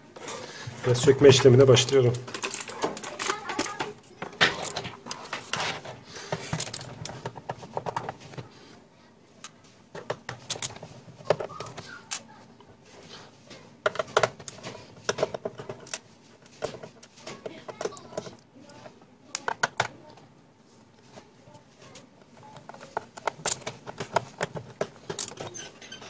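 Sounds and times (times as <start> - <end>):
mechanical keyboard clicks and rattles: 10.1 - 12.2.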